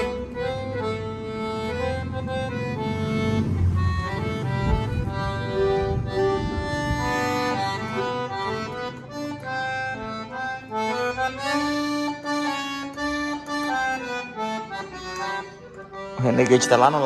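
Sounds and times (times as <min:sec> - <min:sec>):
accordion melody over chords: 0:00.0 - 0:17.0.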